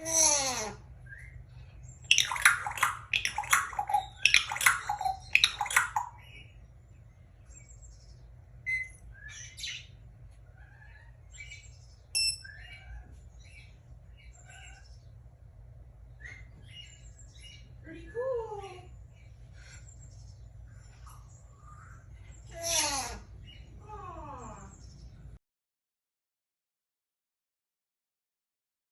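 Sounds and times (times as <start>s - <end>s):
pet bird calling and chirping: 0.0s - 6.6s, 7.6s - 15.2s.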